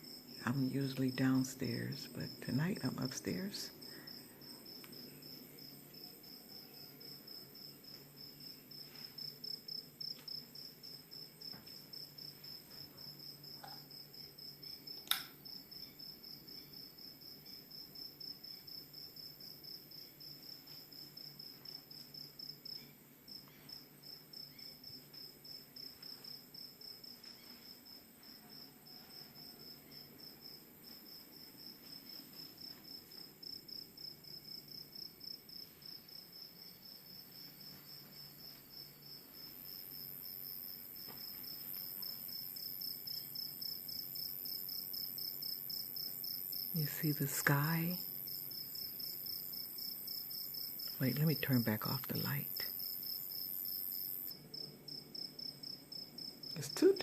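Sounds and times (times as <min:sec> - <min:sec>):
cricket chirping: 0:00.0 - 0:57.0
sharp click: 0:15.0 - 0:15.4.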